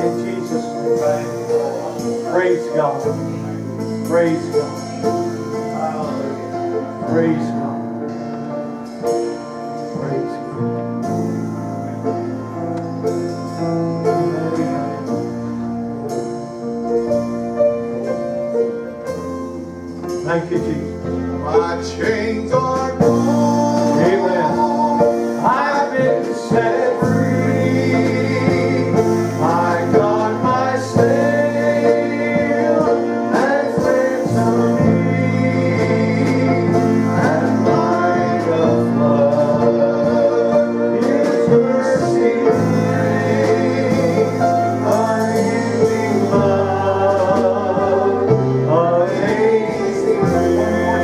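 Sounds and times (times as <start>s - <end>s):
man singing: 0.0s - 3.1s, 13.5s - 15.5s, 20.2s - 51.0s
guitar and band: 0.0s - 51.0s
sustained bass notes: 0.0s - 51.0s.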